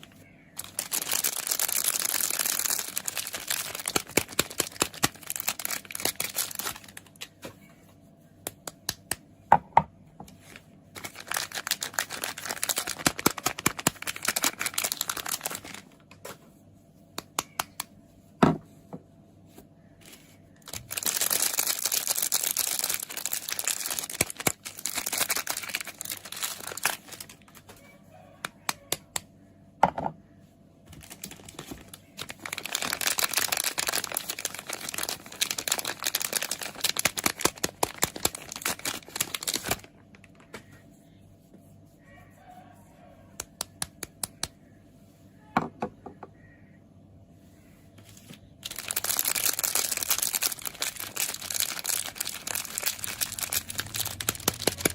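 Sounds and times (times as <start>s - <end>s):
packaging crinkling and tearing: 0.0s - 7.4s, 10.5s - 16.1s, 20.6s - 27.8s, 30.9s - 40.5s, 48.6s - 54.9s.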